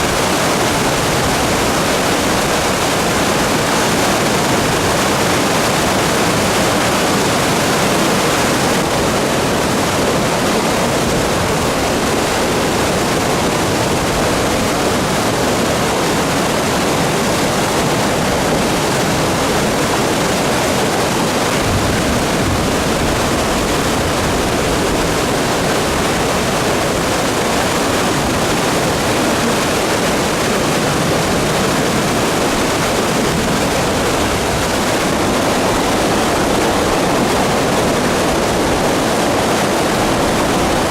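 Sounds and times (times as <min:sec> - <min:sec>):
turbulent river water rushing: 0:00.0 - 0:40.9.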